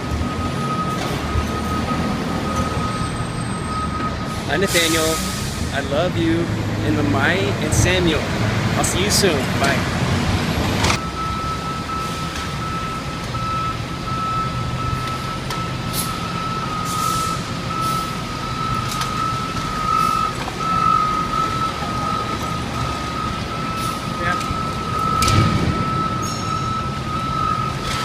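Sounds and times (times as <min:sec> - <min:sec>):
backup alarm tone: 0:00.0 - 0:05.2, 0:11.0 - 0:28.0
diesel engine rumble: 0:00.0 - 0:28.0.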